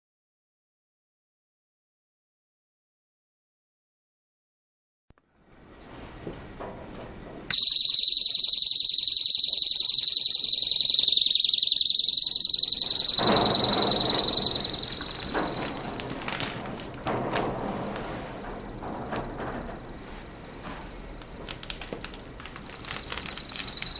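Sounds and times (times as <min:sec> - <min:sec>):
electronic buzzer alarm: 0:07.5 - 0:16.0, 0:22.9 - 0:23.9
low rustling noise: 0:12.9 - 0:23.9.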